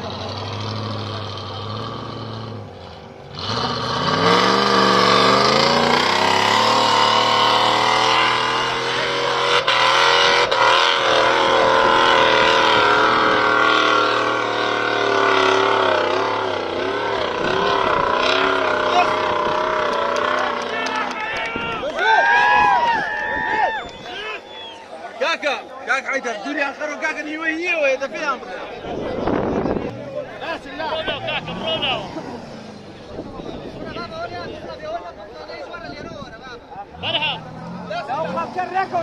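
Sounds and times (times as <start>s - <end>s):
car engine revving: 0.0s - 21.2s, 28.6s - 35.1s, 36.3s - 39.0s.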